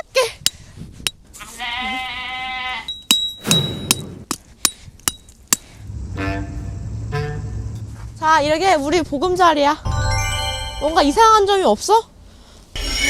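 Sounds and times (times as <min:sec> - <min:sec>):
sheep or goat bleating: 0:01.4 - 0:02.9.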